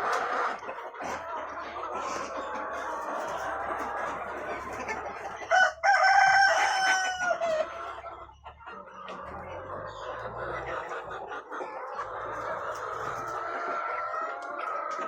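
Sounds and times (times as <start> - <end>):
chickens clucking: 0.0 - 15.0
rooster crowing: 5.5 - 7.5.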